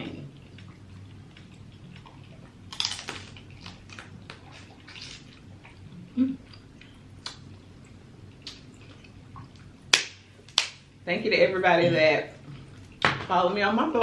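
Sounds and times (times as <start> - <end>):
wet chewing and mouth noises: 0.1 - 10.8.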